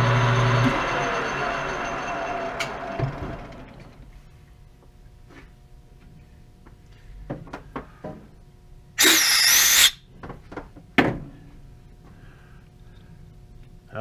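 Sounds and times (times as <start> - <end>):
loud hiss: 9.0 - 10.0.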